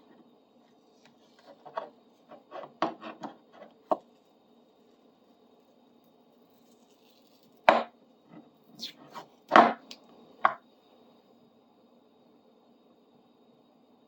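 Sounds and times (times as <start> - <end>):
knocks and taps on workbench: 10.4 - 10.6.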